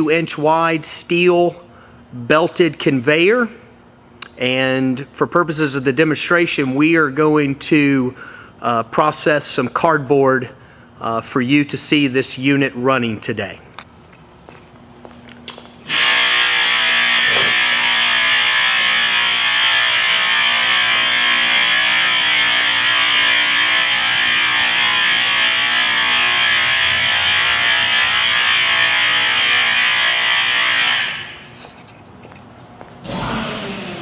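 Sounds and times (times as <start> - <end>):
harsh buzzing warning horn: 15.9 - 31.6.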